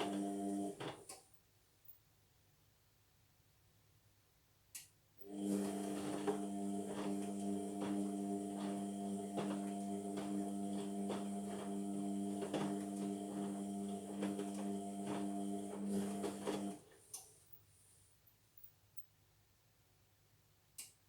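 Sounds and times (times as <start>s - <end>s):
washing machine motor hum: 0.0s - 1.0s, 5.2s - 16.9s.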